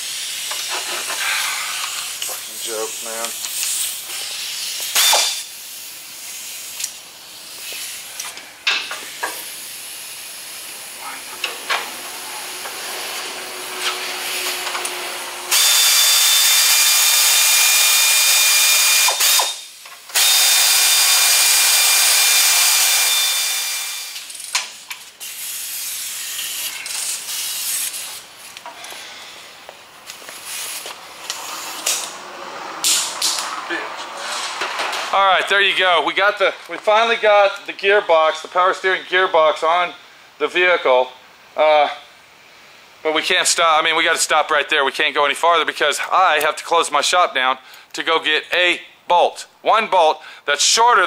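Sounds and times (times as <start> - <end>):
pneumatic air ratchet running: 0.0 - 10.7, 11.4 - 29.4, 30.4 - 32.2, 32.8 - 33.4.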